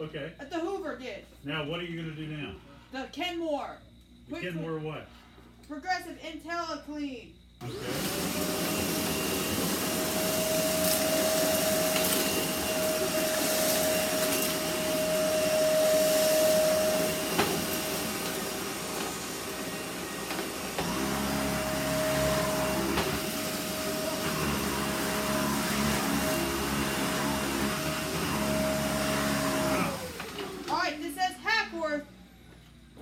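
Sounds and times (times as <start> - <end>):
vacuum cleaner motor whine: 7.6 - 33.0.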